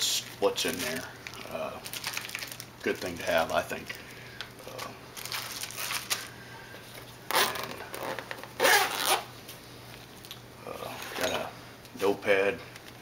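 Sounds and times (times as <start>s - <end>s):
bag rustling: 5.2s - 6.3s
bag zipper pulled open: 7.3s - 9.3s.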